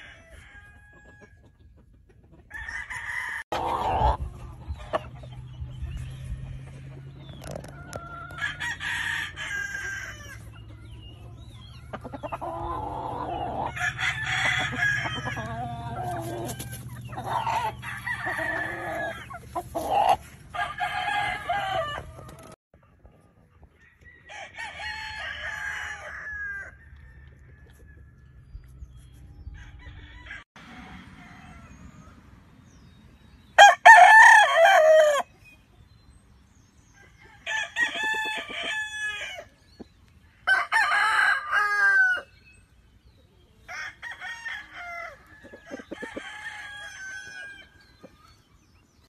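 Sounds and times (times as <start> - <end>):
roosters crowing: 0.0 - 1.7, 2.4 - 22.6, 23.8 - 28.6, 29.4 - 32.8, 33.4 - 35.5, 36.8 - 42.7, 43.4 - 49.0.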